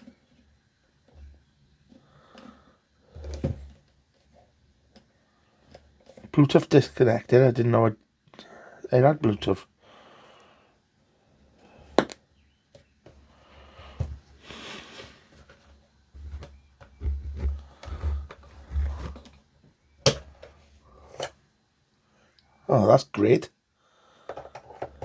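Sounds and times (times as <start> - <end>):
rustling: 14.0 - 19.4.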